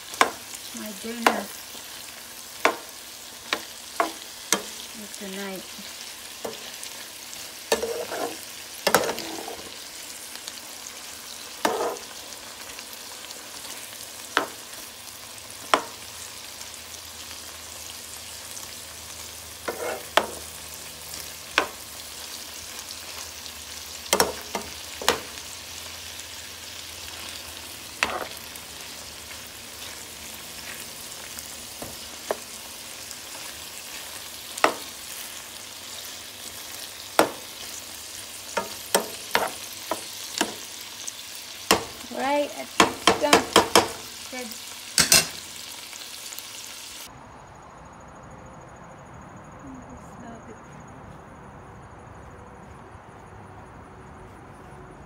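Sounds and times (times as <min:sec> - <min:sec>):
sausages sizzling in a frying pan: 0:00.0 - 0:47.1
utensil clinking against pan: 0:45.0 - 0:45.4.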